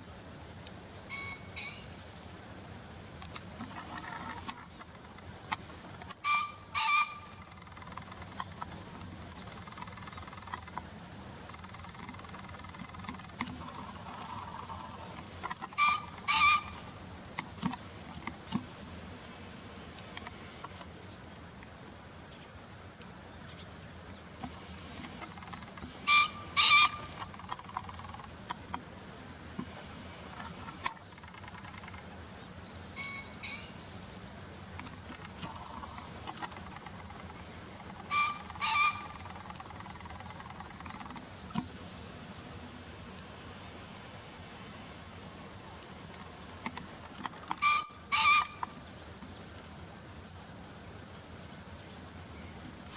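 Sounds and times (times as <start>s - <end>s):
pheasant crowing: 1.1s - 1.9s, 5.8s - 10.8s, 11.4s - 17.0s, 24.4s - 28.4s, 32.9s - 33.8s, 34.8s - 41.2s, 47.5s - 48.8s
faint clicks: 3.2s - 6.2s, 6.8s - 16.3s, 19.9s - 20.9s, 24.4s - 26.1s, 26.8s - 28.9s, 29.6s - 32.1s, 34.7s - 41.8s, 45.8s - 47.6s.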